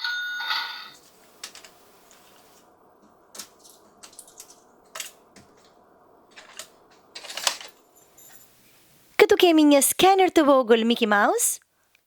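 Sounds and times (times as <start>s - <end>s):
play money rustling: 6.3s - 8.6s.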